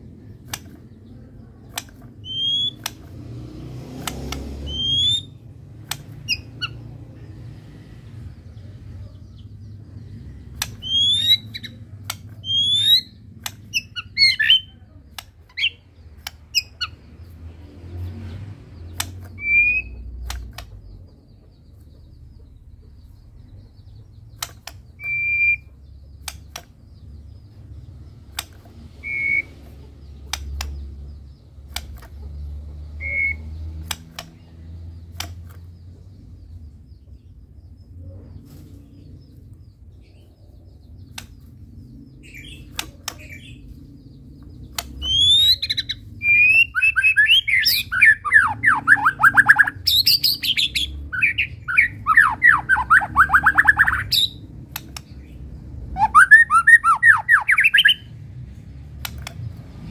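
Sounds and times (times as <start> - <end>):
sharp bird clicks: 0.0 - 59.9
bird whistling song: 1.7 - 3.1, 4.6 - 6.8, 10.5 - 14.8, 18.9 - 20.7, 24.2 - 26.7, 28.3 - 29.7, 32.9 - 34.3, 42.1 - 58.2.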